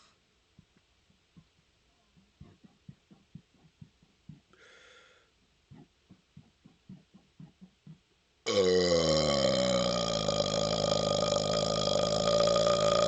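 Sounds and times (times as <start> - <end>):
short breath: 4.5 - 5.4.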